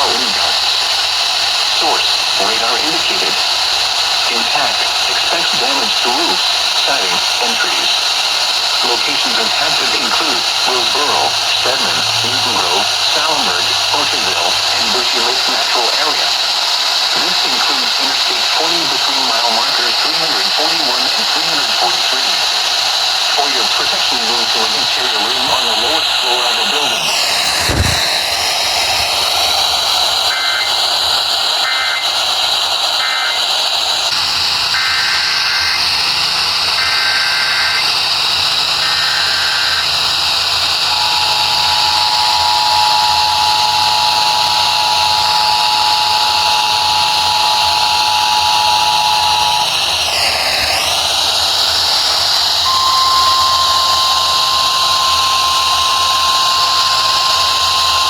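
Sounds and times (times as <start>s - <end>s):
warbling data bursts: 0.0s - 32.4s, 34.7s - 58.0s
radio static: 0.0s - 58.0s
two-tone attention signal: 40.9s - 50.3s, 52.6s - 58.0s
steady alert tone: 52.6s - 58.0s.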